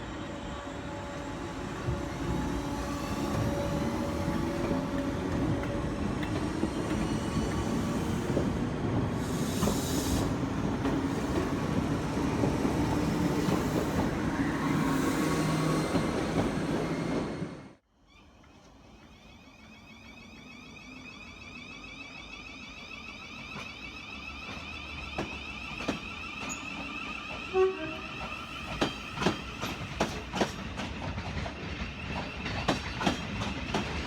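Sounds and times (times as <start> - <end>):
train wheels rumbling: 0.0 - 17.8, 23.4 - 34.0
train motor whine: 0.1 - 17.6.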